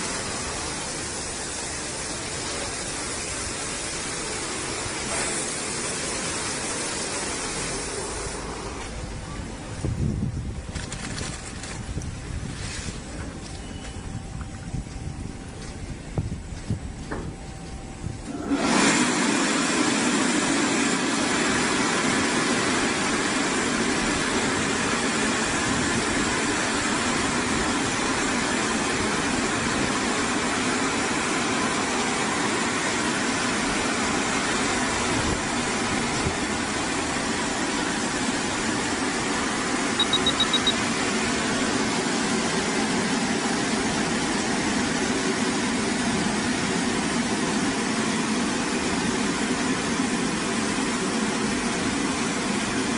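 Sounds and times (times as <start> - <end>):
car washing machine running: 0.0 - 13.6, 14.3 - 52.9
rapid high beeps: 40.0 - 40.8.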